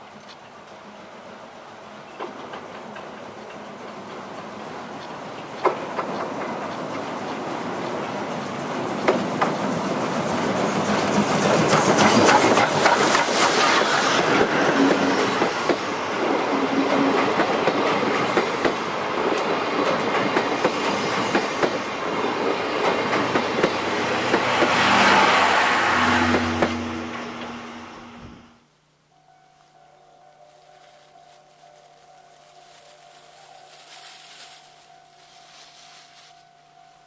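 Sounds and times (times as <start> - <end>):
train passing at speed: 0.1 - 28.6, 29.3 - 37.0
wheels clattering over rail joints: 10.4 - 15.8.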